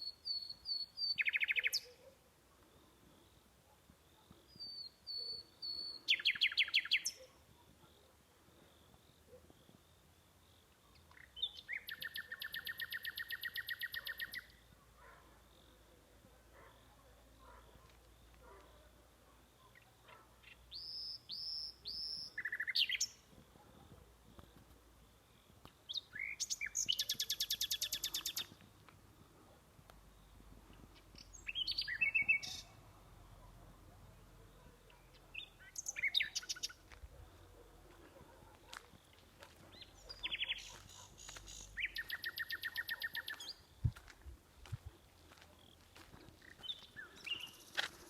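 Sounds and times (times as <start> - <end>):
bird singing whistled notes: 0.0 - 2.0, 4.5 - 7.3, 11.2 - 14.6, 20.7 - 23.2, 25.9 - 28.6, 31.2 - 32.8, 35.4 - 36.8, 39.8 - 43.6.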